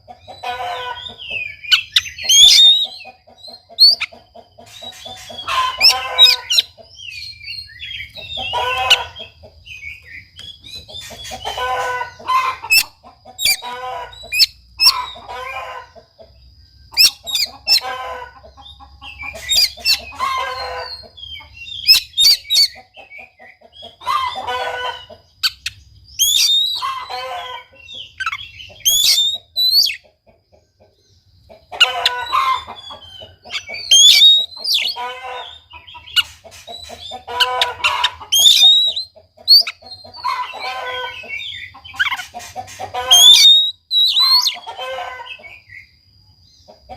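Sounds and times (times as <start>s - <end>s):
low clucking calls: 0.0s - 7.0s, 7.9s - 9.6s, 10.3s - 45.6s
bird chirps and whistles: 1.5s - 3.1s, 12.8s - 13.7s, 21.8s - 22.8s, 25.4s - 26.9s, 28.2s - 30.0s, 33.5s - 35.1s, 38.4s - 39.8s, 43.1s - 44.6s.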